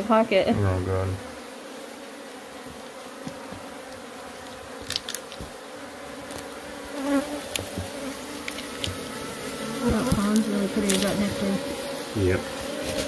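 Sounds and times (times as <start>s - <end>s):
bees buzzing: 0.0s - 13.0s.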